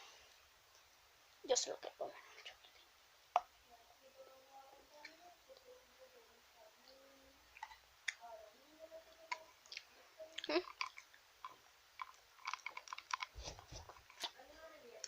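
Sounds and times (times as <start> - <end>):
chocolate crunching: 9.6 - 14.4.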